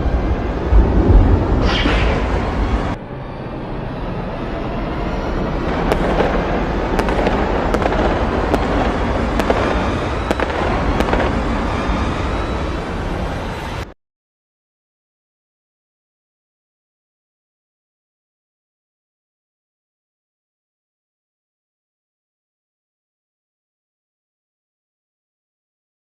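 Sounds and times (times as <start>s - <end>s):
dense crackling rumble: 0.0s - 3.0s, 5.6s - 13.8s
sharp cracks: 5.7s - 11.8s.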